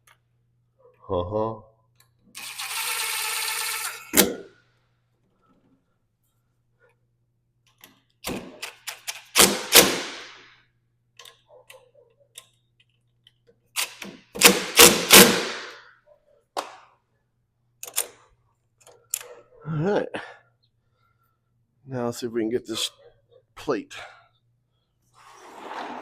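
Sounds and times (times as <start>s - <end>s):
door lock hardware clicking: 17.8s - 18.2s.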